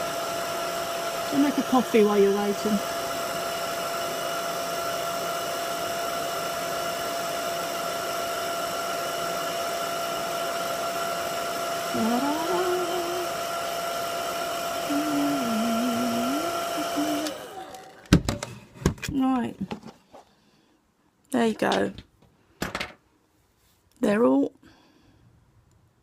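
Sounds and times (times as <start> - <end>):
hairdryer fan whine and rushing air: 0.0 - 18.3.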